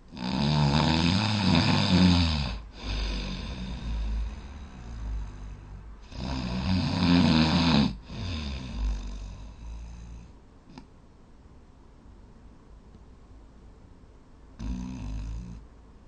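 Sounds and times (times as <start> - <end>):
person snoring loudly: 0.1 - 10.3, 14.6 - 15.6.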